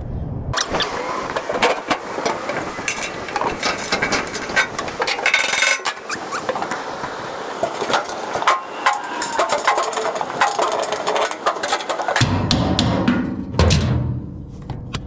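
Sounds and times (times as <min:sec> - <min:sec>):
knocks and clatter on metal hardware: 0:00.6 - 0:12.2.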